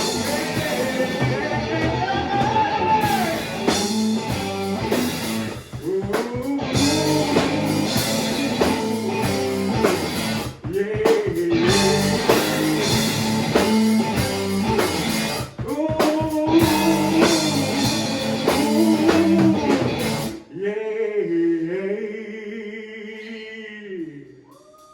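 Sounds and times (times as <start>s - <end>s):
rock band playing: 0.0s - 20.4s.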